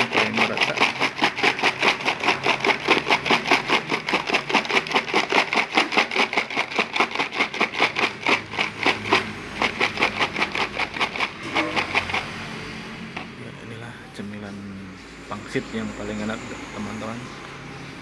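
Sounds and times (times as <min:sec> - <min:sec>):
fried chips rattling in container: 0:00.0 - 0:12.7.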